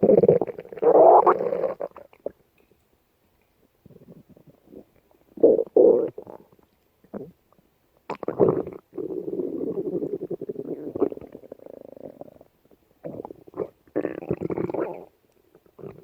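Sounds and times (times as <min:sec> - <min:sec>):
stomach growling: 0:00.0 - 0:02.4, 0:03.8 - 0:07.4, 0:08.1 - 0:16.0.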